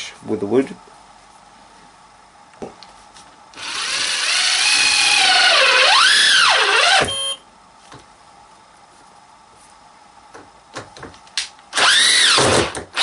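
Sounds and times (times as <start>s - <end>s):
cordless driver motor whining: 3.6s - 7.3s, 11.8s - 13.0s.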